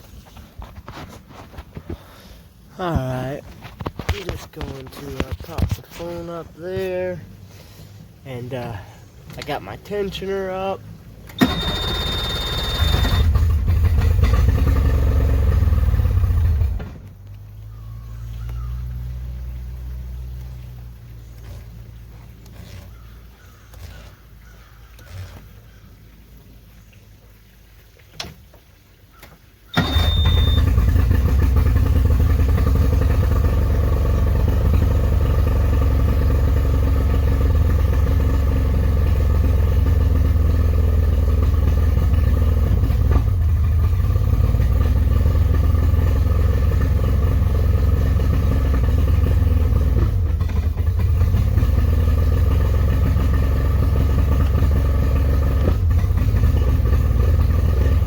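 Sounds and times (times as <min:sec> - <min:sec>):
outboard motor idling: 0:00.0 - 0:25.8, 0:28.2 - 0:58.0
high beep: 0:11.4 - 0:13.3.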